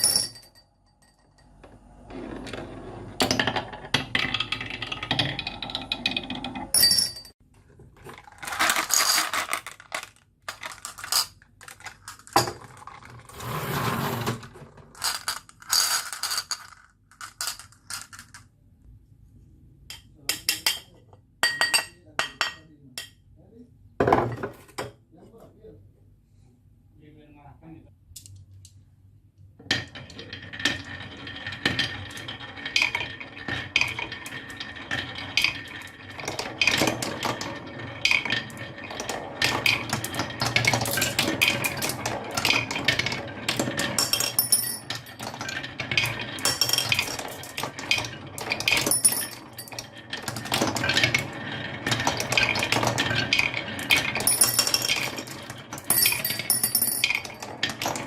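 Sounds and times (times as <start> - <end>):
marbles rolling down a marble run: 2.1 - 6.8, 8.0 - 18.4, 29.6 - 58.0.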